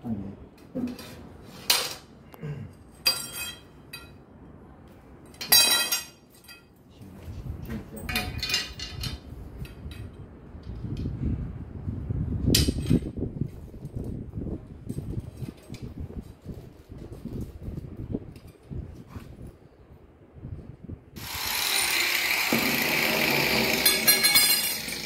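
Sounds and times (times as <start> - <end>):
metal objects clinking: 3.0 - 4.2, 5.3 - 6.8, 23.6 - 25.0.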